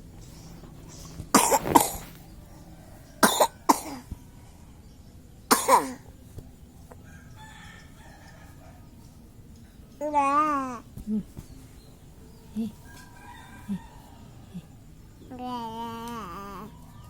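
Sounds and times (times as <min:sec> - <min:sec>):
wet phlegmy coughing: 0:01.3 - 0:02.2, 0:03.2 - 0:04.1, 0:05.5 - 0:06.0.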